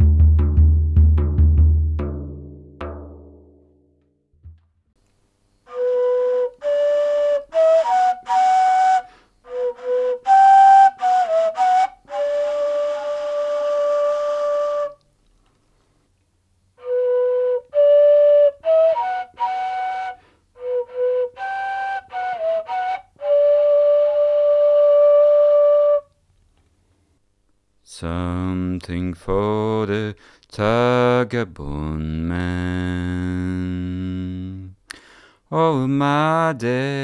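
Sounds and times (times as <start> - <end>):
breathy reed flute melody: 5.5 - 15.1, 16.7 - 26.2.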